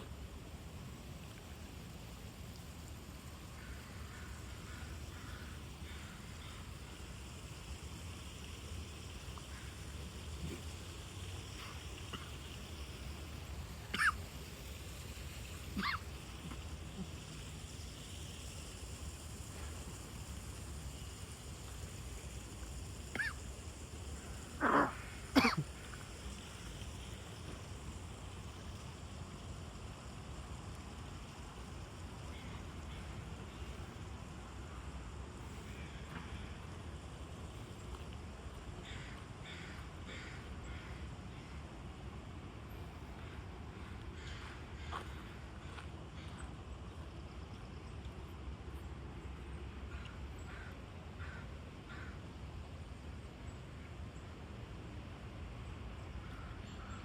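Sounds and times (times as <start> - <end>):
even hiss: 0.0 - 57.0
harsh animal calls: 15.8 - 16.1, 24.6 - 25.6.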